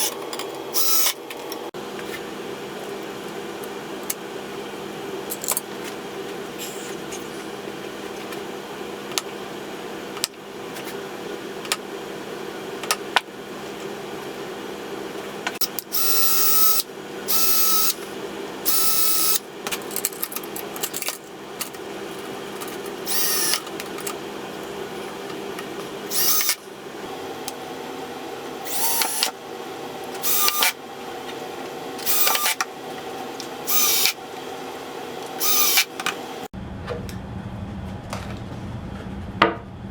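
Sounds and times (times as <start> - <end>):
power drill whining: 0.7 - 1.2, 15.9 - 18.1, 18.7 - 19.4, 23.0 - 23.7, 26.1 - 26.6, 28.6 - 29.4, 30.1 - 30.8, 32.0 - 32.7, 33.6 - 34.3, 35.3 - 36.2.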